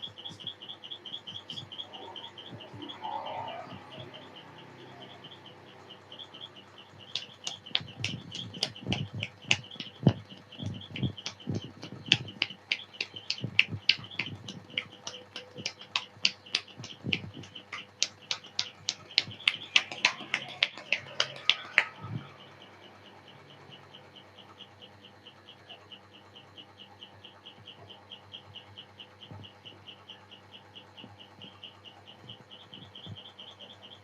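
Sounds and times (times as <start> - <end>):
hands slapping and clicking: 7.1 - 22.0.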